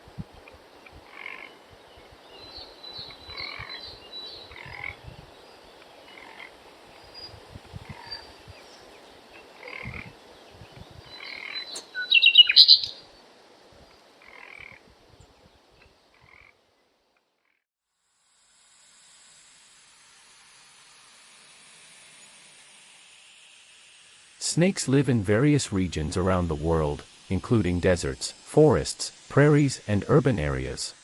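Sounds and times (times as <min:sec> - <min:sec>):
frogs croaking: 0:00.4 - 0:10.3, 0:11.0 - 0:13.1, 0:13.9 - 0:14.9, 0:16.1 - 0:16.7
high chirping calls: 0:10.9 - 0:13.0
soft background hiss: 0:18.0 - 0:31.0.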